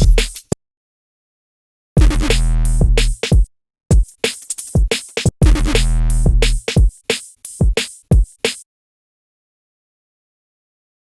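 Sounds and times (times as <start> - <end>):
buzzy synth bass: 0.0 - 0.4, 2.0 - 3.2, 5.4 - 6.7
drum machine hits: 0.0 - 0.5, 2.0 - 8.6.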